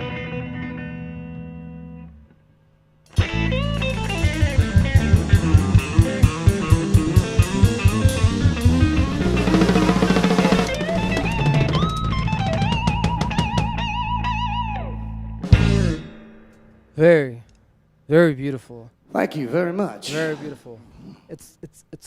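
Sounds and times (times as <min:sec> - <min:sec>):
live rock band playing: 0:03.1 - 0:16.4
sustained electric guitar notes: 0:03.1 - 0:16.5
rapid drum hits: 0:04.2 - 0:13.4.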